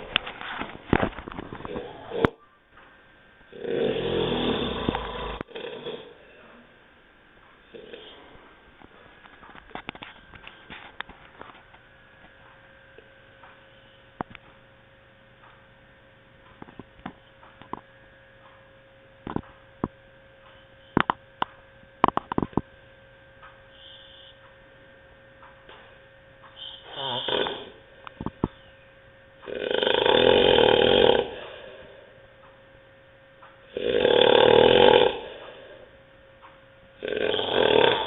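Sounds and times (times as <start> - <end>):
electrical hum: 0.0 - 38.0
person snoring: 3.5 - 6.5, 7.7 - 8.4, 26.6 - 27.8, 29.5 - 32.2, 33.7 - 35.9, 37.0 - 38.0.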